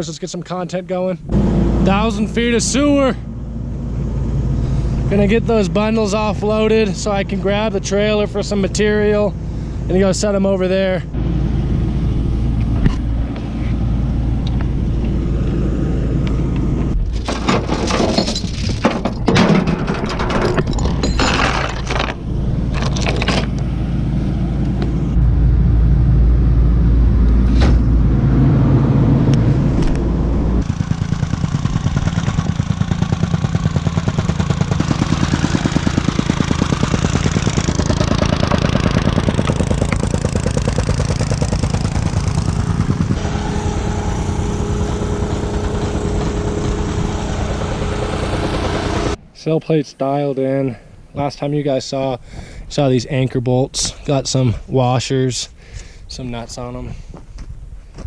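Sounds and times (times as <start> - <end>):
diesel engine running: 1.2 - 49.2
sharp metal clanks: 17.1 - 23.6.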